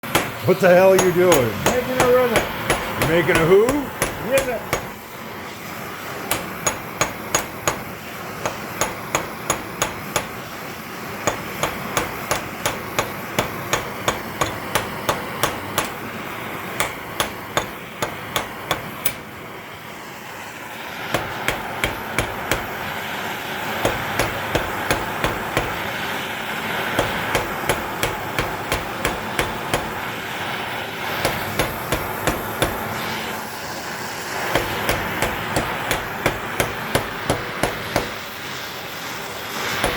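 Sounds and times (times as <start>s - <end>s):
hammer striking metal: 0.0s - 5.0s, 6.3s - 19.3s, 21.1s - 23.0s, 23.8s - 26.0s, 26.8s - 30.3s, 31.1s - 33.0s, 34.4s - 38.4s, 39.7s - 39.9s
steady hiss: 0.0s - 39.9s.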